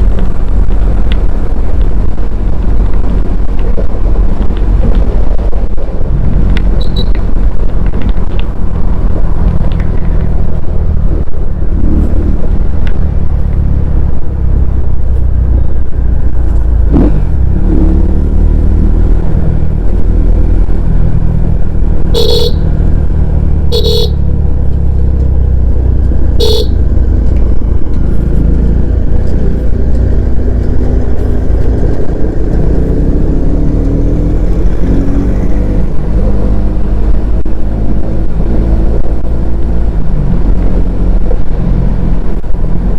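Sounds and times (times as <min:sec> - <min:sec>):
motorcycle engine rumbling: 0:00.0 - 0:42.9
vehicle horn honking: 0:22.1 - 0:22.7, 0:23.7 - 0:24.2, 0:26.4 - 0:26.8.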